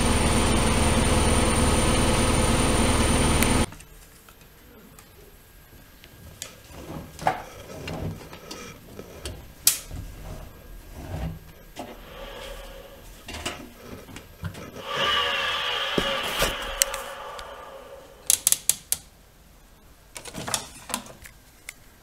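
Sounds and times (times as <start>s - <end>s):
rasping sound with pitched tones: 14.8s - 18.6s.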